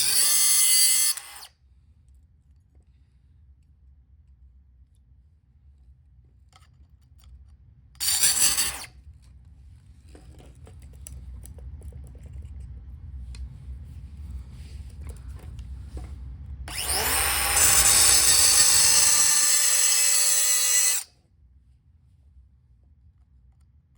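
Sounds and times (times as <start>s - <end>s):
light clicks and handling: 9.1s - 13.5s
power tool whining: 16.7s - 21.1s.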